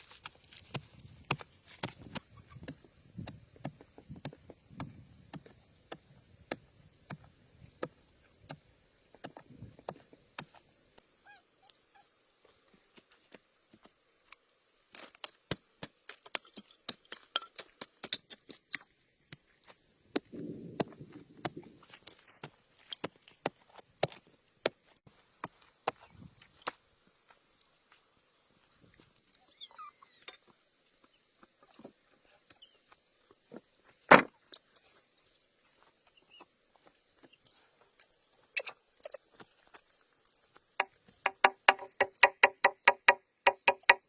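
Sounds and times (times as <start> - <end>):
sharp taps and knocks: 40.8 - 44.0.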